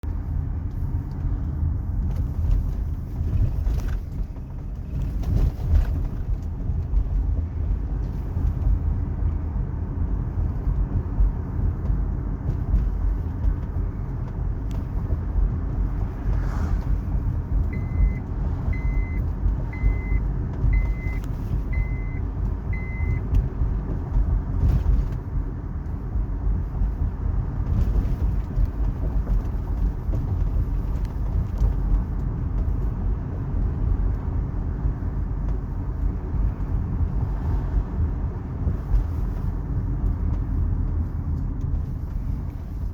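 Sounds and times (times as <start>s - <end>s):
car cabin rumble over bumps: 0.0s - 42.9s
car warning chime beeps: 17.7s - 23.3s.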